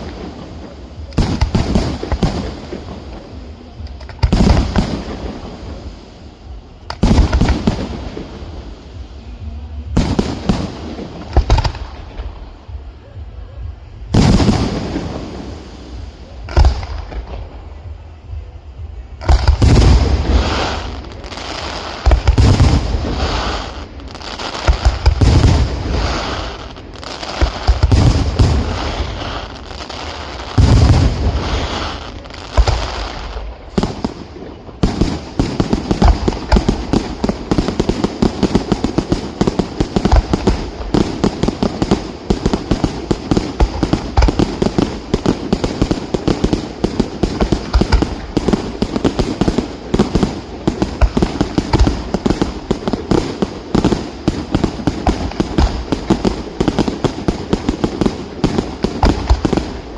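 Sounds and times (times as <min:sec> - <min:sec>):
small sharp firework cracks: 0:00.0 - 0:05.4, 0:21.9 - 0:59.9
fireworks bursting with loud bangs: 0:00.0 - 0:59.9.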